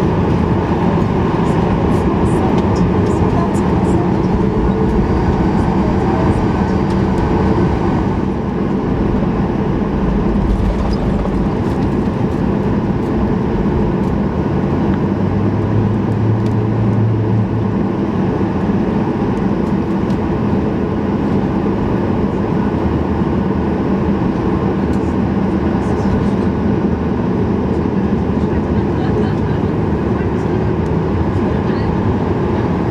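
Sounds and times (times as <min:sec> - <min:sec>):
low hum: 0:00.0 - 0:16.6
airplane cabin engine noise: 0:00.0 - 0:32.9.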